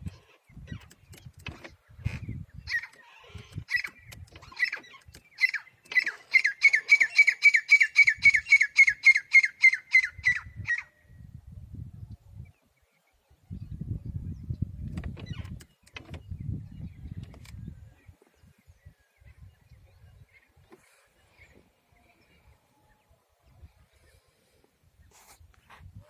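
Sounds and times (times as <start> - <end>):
bird chirping: 0.1 - 11.1.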